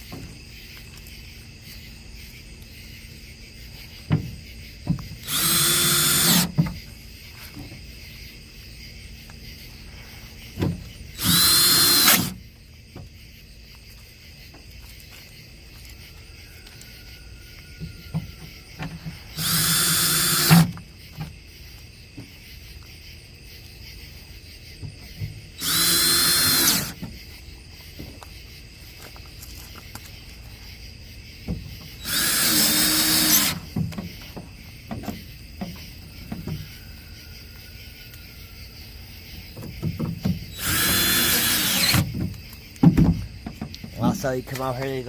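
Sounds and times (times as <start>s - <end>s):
power drill driving screws: 5.2s - 6.6s, 11.2s - 12.4s, 19.3s - 20.8s, 25.6s - 27.0s, 32.0s - 33.7s, 40.5s - 42.1s.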